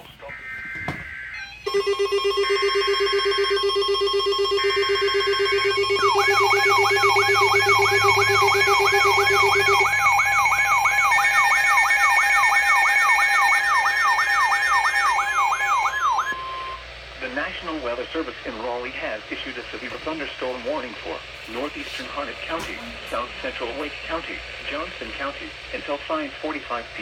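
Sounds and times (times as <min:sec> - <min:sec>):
sweeping siren-like alarm tone: 0:00.0 - 0:16.9
steady electronic tones: 0:00.0 - 0:26.9
buzzing digital data bursts: 0:03.2 - 0:16.8.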